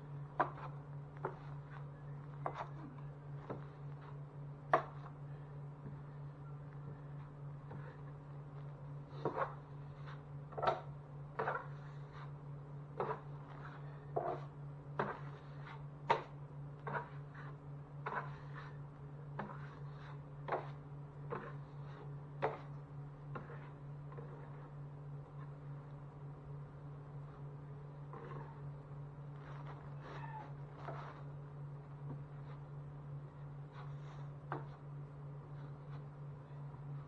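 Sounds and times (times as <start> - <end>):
hand tools tapping and scraping drywall: 0.0 - 5.2, 6.8 - 26.0, 29.3 - 32.7, 33.3 - 34.9
steady low hum: 0.0 - 37.0.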